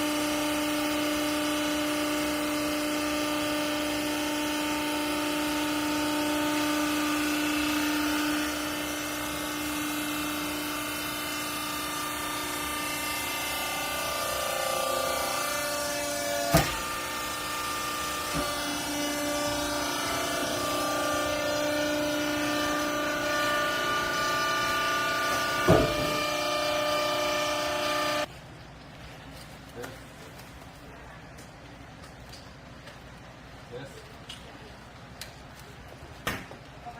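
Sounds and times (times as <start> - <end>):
baler machine whine: 0.0 - 28.3.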